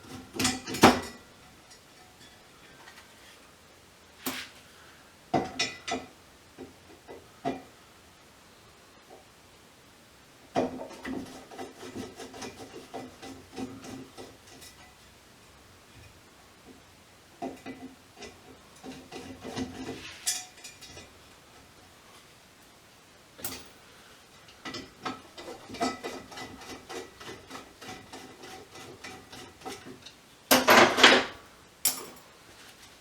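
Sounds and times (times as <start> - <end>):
metal parts clinking and rattling: 30.6 - 32.3.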